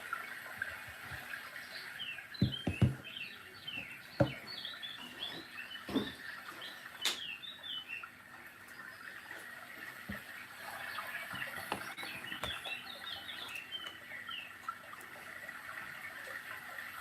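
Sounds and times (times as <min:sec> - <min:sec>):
bird-like chirping: 0:01.6 - 0:09.2, 0:10.8 - 0:14.6
dull knocks: 0:02.4 - 0:03.1, 0:03.8 - 0:04.4.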